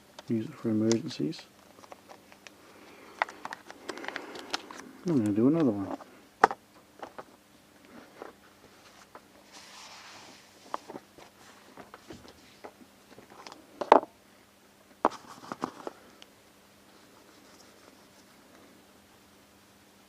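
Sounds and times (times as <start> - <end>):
plastic items clicking and tapping: 0.2 - 7.3.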